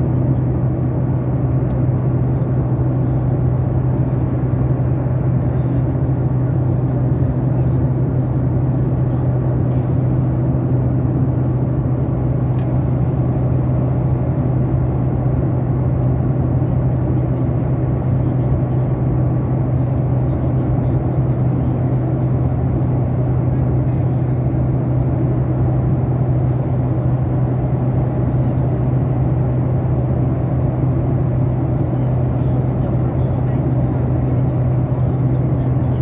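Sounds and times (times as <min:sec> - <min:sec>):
airliner cabin engine drone: 0:00.0 - 0:36.0.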